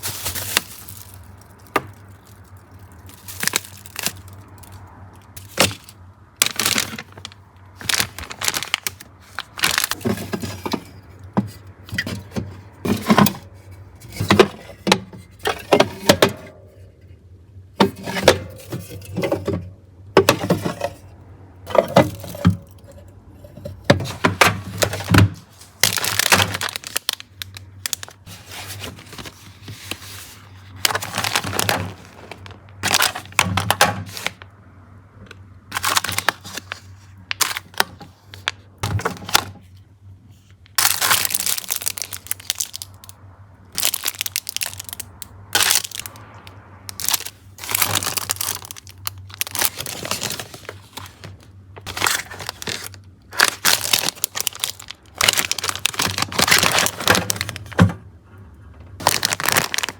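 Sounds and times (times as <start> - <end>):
plastic crinkling: 0.0 - 13.4, 24.0 - 34.5, 35.7 - 39.8, 40.4 - 46.2, 46.9 - 57.8, 59.0 - 59.9
containers clicking and clunking: 3.2 - 17.0, 17.7 - 34.4, 35.2 - 39.7, 46.9 - 58.1.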